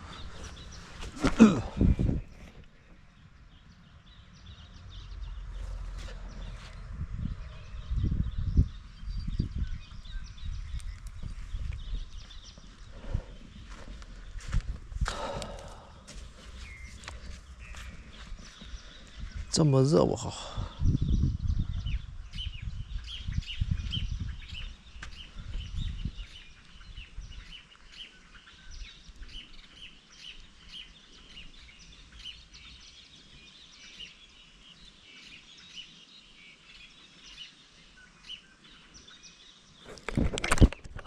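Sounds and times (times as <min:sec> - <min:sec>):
small birds chirping: 0:00.0 - 0:41.0
low rumble: 0:04.0 - 0:18.4.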